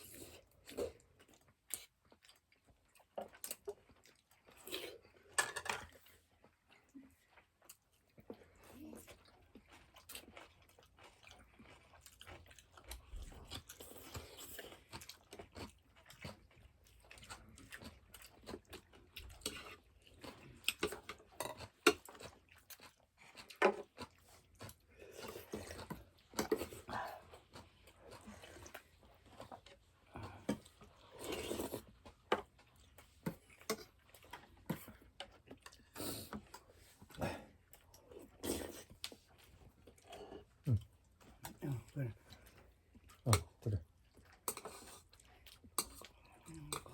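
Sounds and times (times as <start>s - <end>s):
person chewing and crunching food: 0.0s - 46.9s.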